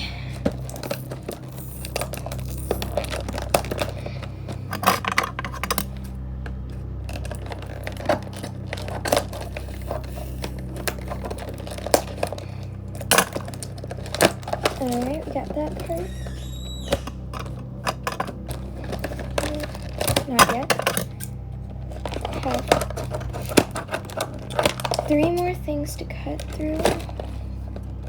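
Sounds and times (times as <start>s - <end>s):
low background hum: 0.0s - 28.0s
scissors cutting plastic: 0.4s - 28.0s.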